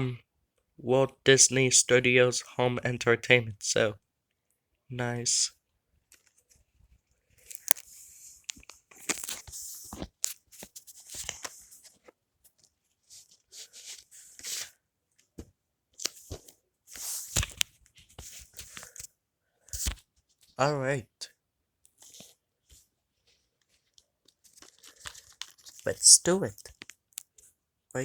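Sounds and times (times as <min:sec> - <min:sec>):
plastic wrap tearing and crinkling: 0:09.0 - 0:10.4, 0:24.4 - 0:25.9.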